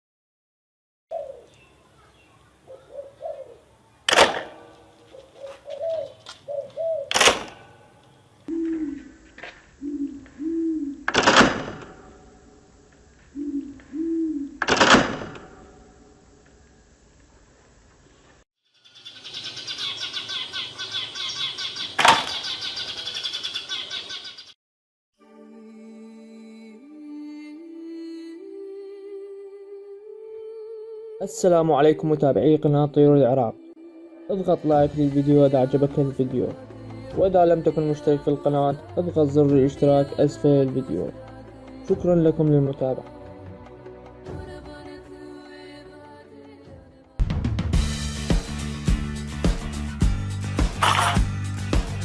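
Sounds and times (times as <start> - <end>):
pigeon cooing: 1.1 - 3.9, 5.0 - 7.2, 8.5 - 9.2, 9.8 - 11.2, 13.3 - 14.7, 50.8 - 51.3
small birds chirping: 1.1 - 4.1, 18.0 - 24.6
sharp click: 7.1 - 8.1, 50.8 - 51.2
wings fluttering: 50.8 - 51.3.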